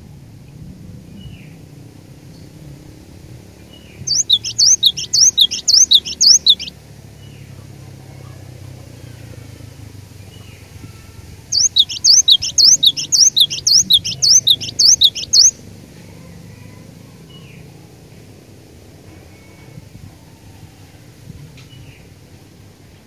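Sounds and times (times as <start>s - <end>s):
faint bird chirps: 3.7s - 6.7s, 10.2s - 15.6s
bird singing sharp high notes: 4.0s - 6.7s, 11.5s - 15.6s.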